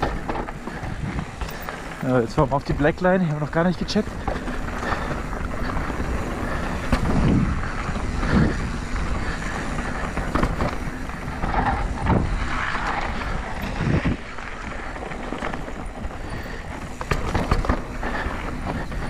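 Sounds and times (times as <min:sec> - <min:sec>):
bike tyres rolling on dirt: 0:00.0 - 0:19.0
wind on microphone: 0:04.1 - 0:19.0
thuds from bumps: 0:16.9 - 0:19.0.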